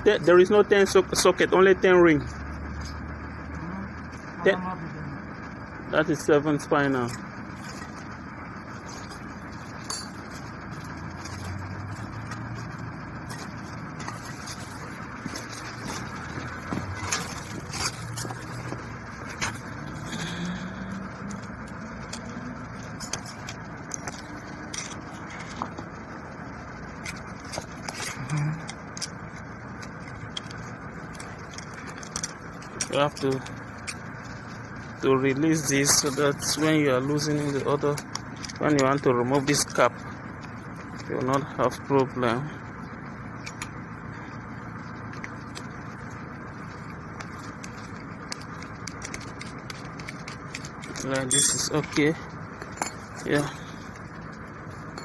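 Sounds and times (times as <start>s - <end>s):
steady background hum: 0.0s - 55.0s
steady background rumble: 0.0s - 55.0s
spanners clicking and scraping: 6.2s - 55.0s
clicks and taps on a motor: 46.6s - 51.2s.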